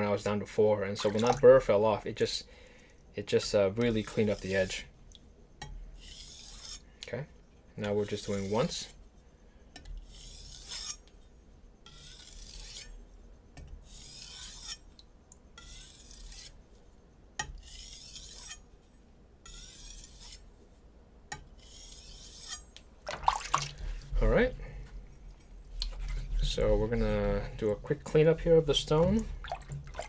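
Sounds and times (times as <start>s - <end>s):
knife scraping on whetstone: 3.8s - 4.9s, 6.0s - 6.8s, 7.8s - 9.0s, 10.0s - 11.1s, 11.8s - 13.0s, 13.8s - 14.9s, 15.6s - 16.6s, 17.6s - 18.7s, 19.4s - 20.5s, 21.5s - 22.7s.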